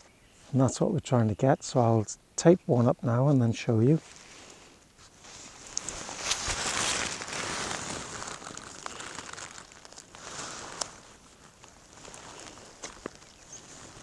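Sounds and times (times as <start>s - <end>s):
adhesive tape crinkling and ripping: 5.7s - 10.2s.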